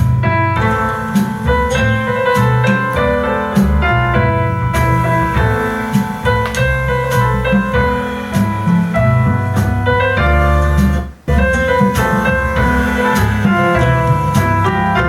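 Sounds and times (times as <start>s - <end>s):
keyboard music with heavy bass: 0.0s - 15.0s.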